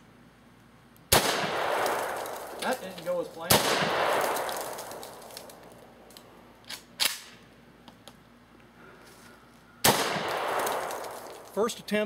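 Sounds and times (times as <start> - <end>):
shotgun blast echo: 1.1 - 5.2, 9.8 - 11.4.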